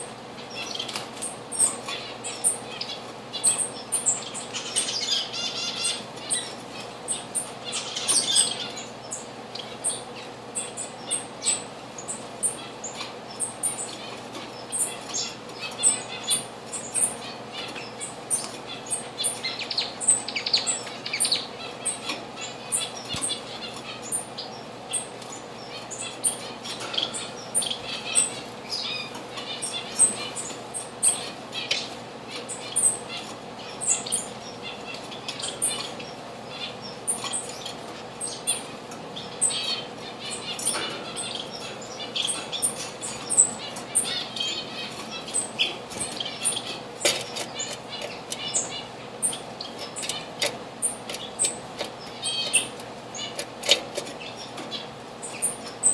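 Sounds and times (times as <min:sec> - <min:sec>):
small birds chirping: 0:00.0 - 0:55.9.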